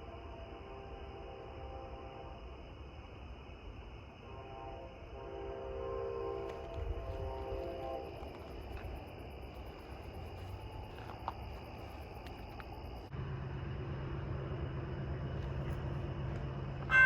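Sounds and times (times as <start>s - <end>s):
insects chirping: 0.0s - 17.0s
passing train rumble: 0.0s - 17.0s
steady low hum: 0.0s - 17.0s
locomotive horn chord: 4.2s - 8.3s.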